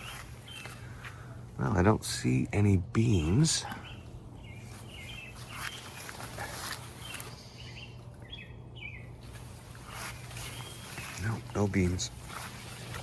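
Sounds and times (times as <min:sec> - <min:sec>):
small bird chirping: 0:00.0 - 0:01.0, 0:03.2 - 0:12.4
steady low hum: 0:00.0 - 0:13.0.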